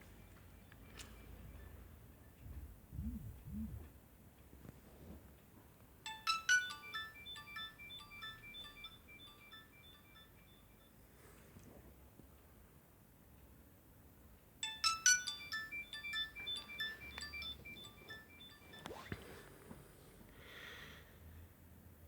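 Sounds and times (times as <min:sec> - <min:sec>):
mobile phone polyphonic ringtone: 0:06.1 - 0:11.3, 0:14.6 - 0:19.5.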